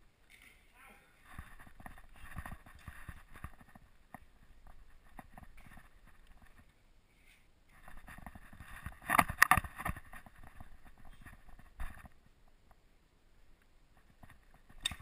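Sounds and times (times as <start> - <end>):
soft knocks and rustling of camera: 1.2 - 6.7, 7.7 - 12.8.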